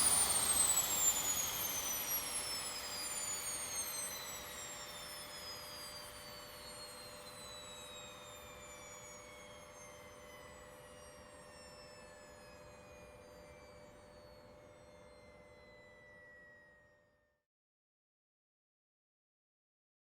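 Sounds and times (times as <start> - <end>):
turbine whine winding down: 0.0 - 4.4.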